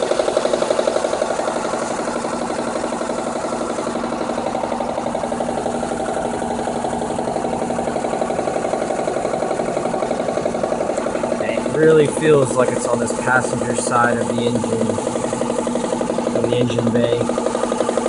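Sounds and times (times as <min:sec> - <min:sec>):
car engine idling: 0:00.0 - 0:18.0
fast even pulsing noise: 0:08.4 - 0:18.0.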